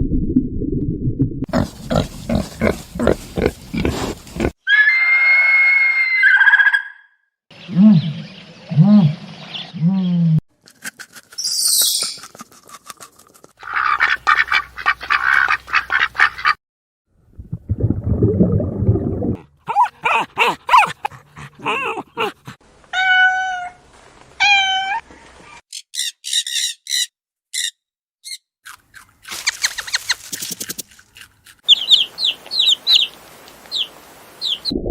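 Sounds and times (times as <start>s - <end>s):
rapid animal chattering: 1.5s - 4.6s
pitched animal cries: 19.7s - 23.8s
high animal chirps: 31.6s - 33.1s.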